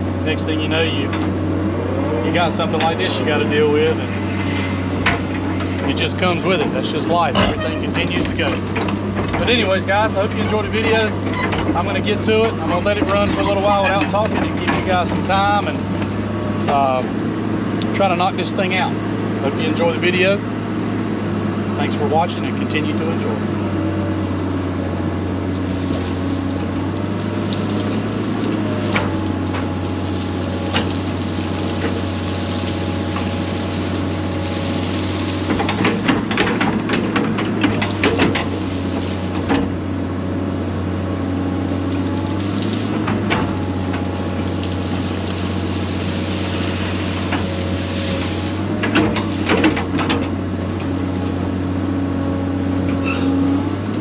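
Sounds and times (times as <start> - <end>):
diesel engine running: 0.0 - 54.0
sharp cracks and knocks: 25.6 - 39.8.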